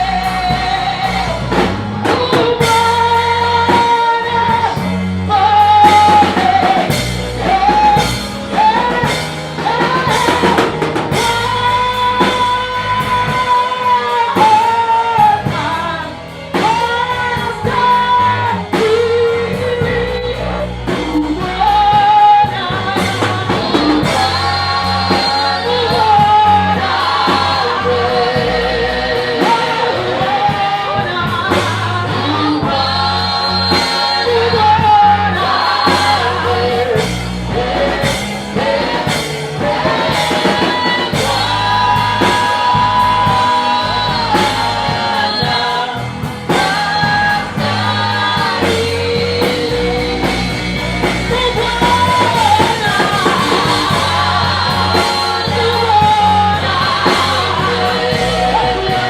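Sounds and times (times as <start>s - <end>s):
band with drums guitar and bass: 0.0s - 59.0s
group singing gospel song: 0.0s - 59.0s.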